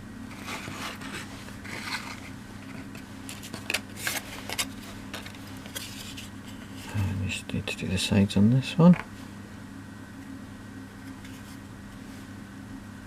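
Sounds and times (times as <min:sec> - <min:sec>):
wooden pieces scraping and rubbing: 0:00.3 - 0:06.3.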